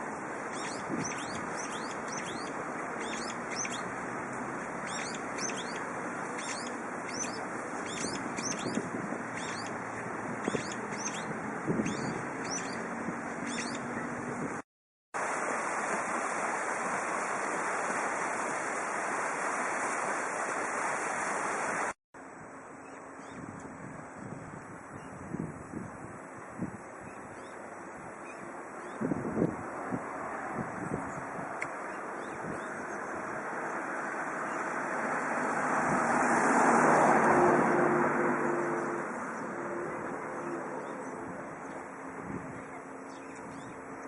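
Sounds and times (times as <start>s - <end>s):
wind noise on microphone: 0.0s - 14.6s, 23.2s - 44.0s
bird calling sharp notes: 4.8s - 9.8s, 10.4s - 12.9s.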